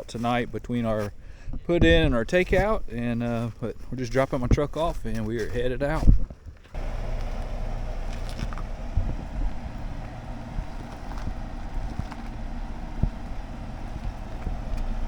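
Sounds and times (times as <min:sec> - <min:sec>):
low road rumble: 0:06.8 - 0:15.0
small knocks and bumps: 0:06.8 - 0:15.0.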